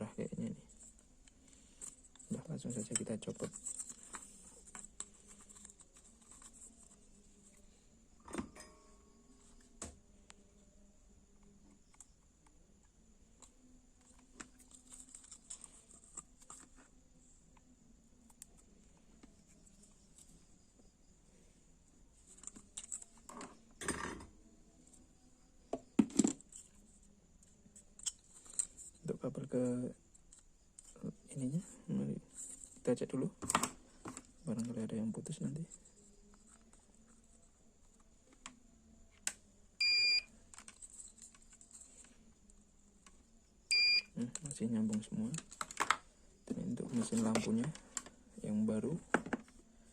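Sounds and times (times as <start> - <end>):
multimeter high beep: 39.8 - 40.3, 43.7 - 44.2.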